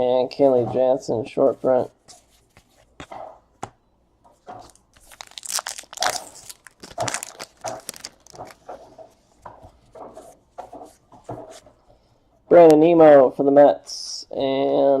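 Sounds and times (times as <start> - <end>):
foil wrappers crinkling and tearing: 4.7 - 8.6.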